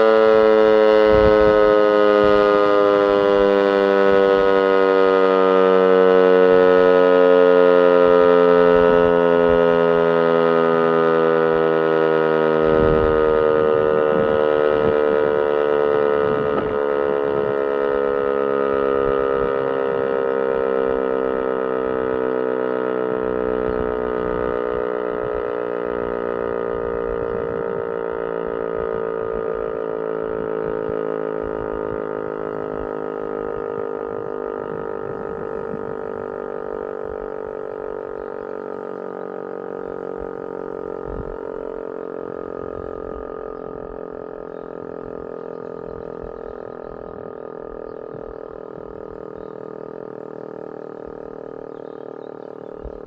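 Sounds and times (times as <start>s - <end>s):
siren winding down: 0.0s - 53.0s.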